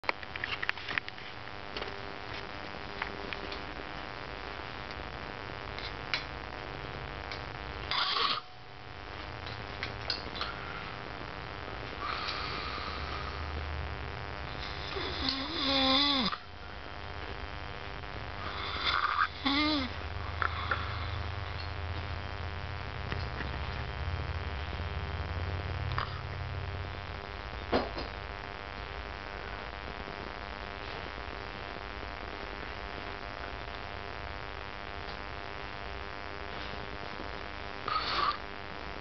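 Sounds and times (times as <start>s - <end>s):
steady electrical hum: 0.0s - 39.0s
boy snoring: 7.9s - 8.4s, 12.0s - 13.5s, 14.5s - 16.5s, 18.4s - 21.6s, 25.9s - 26.3s, 37.8s - 38.4s
sleep noises: 10.4s - 16.9s, 18.3s - 22.2s, 36.4s - 38.5s.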